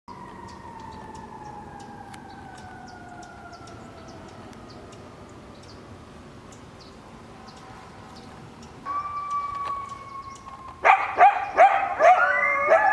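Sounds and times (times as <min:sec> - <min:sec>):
siren wailing falling note: 0:00.1 - 0:04.8, 0:08.9 - 0:10.8.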